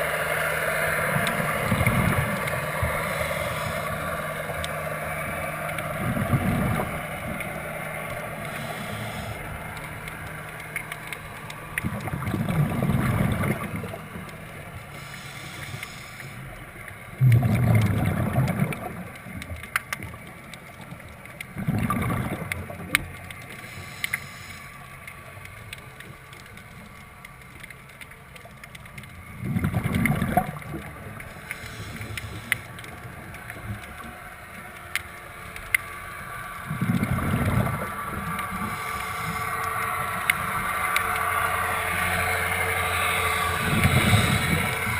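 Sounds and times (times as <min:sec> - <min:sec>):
faint clicks in water: 0:01.0 - 0:44.9
diver's exhaled bubbles: 0:01.4 - 0:04.0, 0:06.0 - 0:07.4, 0:11.8 - 0:14.1, 0:17.2 - 0:19.1, 0:21.5 - 0:23.0, 0:29.3 - 0:32.5, 0:36.7 - 0:39.4, 0:43.6 - 0:44.9.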